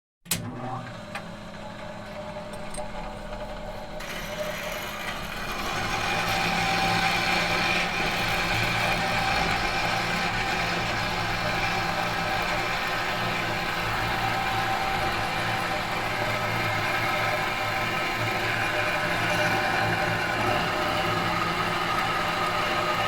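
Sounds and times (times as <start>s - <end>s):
metal machine hum: 0.3s - 7.1s.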